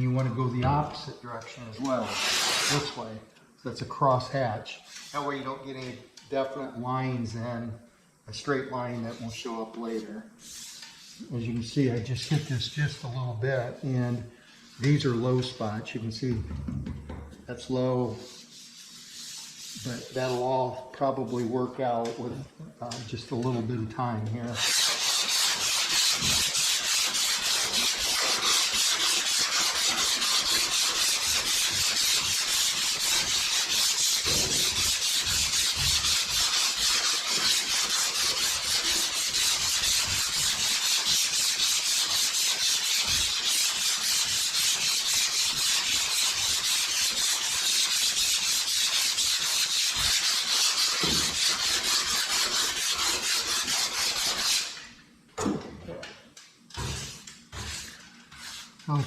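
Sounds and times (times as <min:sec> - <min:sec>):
hand sanding rasping scrape: 0:01.9 - 0:03.0, 0:04.8 - 0:05.5, 0:08.9 - 0:11.5, 0:18.1 - 0:21.6, 0:24.4 - 0:54.8, 0:56.8 - 0:59.0.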